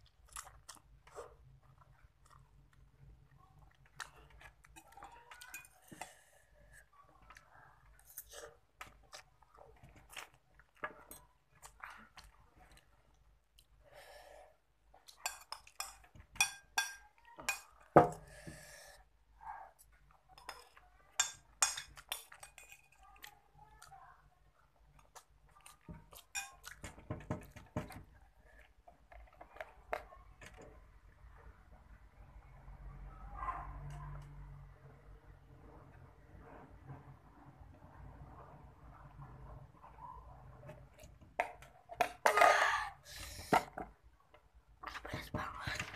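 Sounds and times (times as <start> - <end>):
person chewing noodles: 0.0 - 13.8, 24.9 - 27.6
cutlery clinking on a plate: 15.3 - 18.2.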